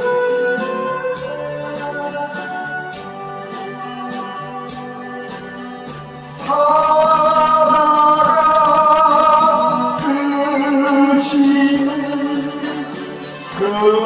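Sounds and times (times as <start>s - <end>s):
loud held melody note: 0.0s - 14.0s
soft backing with light beat: 0.0s - 14.0s.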